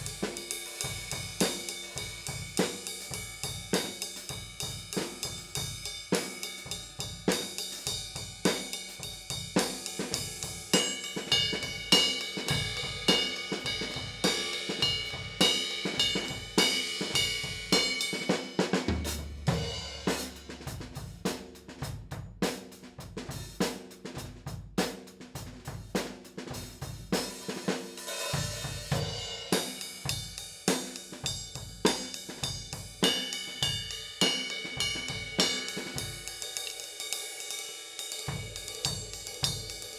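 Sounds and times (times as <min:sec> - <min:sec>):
ringing cymbals: 0:00.0 - 0:20.5, 0:27.2 - 0:39.9
hi-hat: 0:00.0 - 0:21.8, 0:25.9 - 0:39.9
kick and snare drum strikes: 0:18.6 - 0:36.2.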